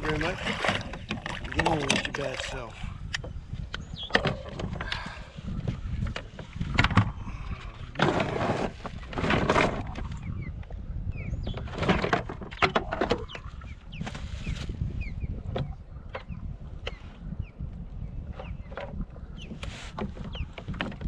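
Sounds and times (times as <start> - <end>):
paddle splashing: 0.0 - 3.1
wind buffeting microphone: 0.0 - 21.0
knocks from paddle and gear: 0.3 - 2.5, 11.5 - 13.4, 18.4 - 21.0
bird chirps: 3.8 - 4.2.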